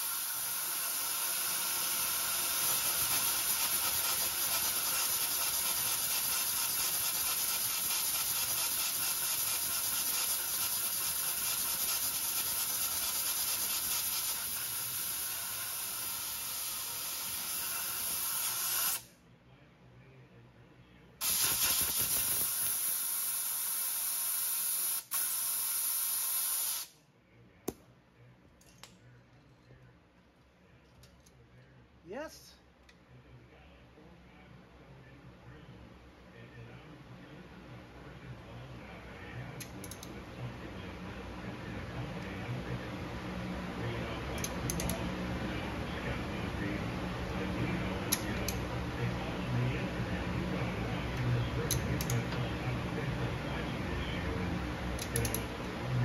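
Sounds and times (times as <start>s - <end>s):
welding arc hissing: 0.0s - 19.1s, 21.2s - 26.9s.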